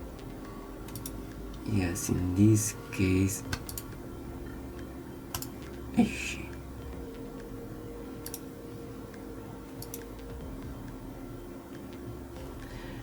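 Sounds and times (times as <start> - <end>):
faint soft background music: 0.0 - 13.0
low room hum: 0.0 - 13.0
computer mouse clicks: 0.9 - 1.6, 3.5 - 4.0, 4.8 - 5.8, 8.2 - 8.4, 9.8 - 10.3.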